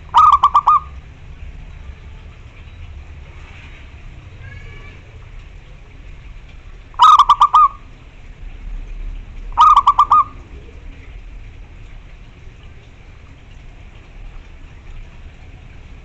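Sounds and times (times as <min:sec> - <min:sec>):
dove cooing: 0:00.0 - 0:01.0, 0:06.9 - 0:07.9, 0:09.5 - 0:11.2.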